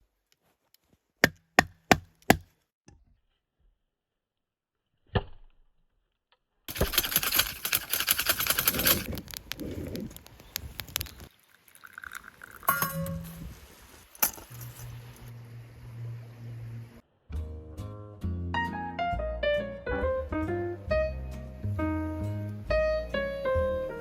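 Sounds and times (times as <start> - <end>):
crackling and hiss: 8.7 - 17.0.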